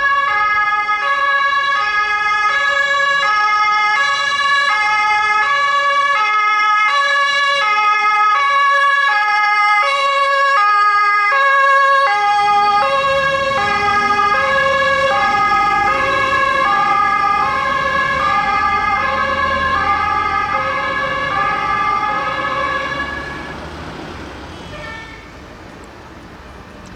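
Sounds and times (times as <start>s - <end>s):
two-tone siren: 0.0s - 25.4s
vehicle engine rumble: 12.2s - 26.9s.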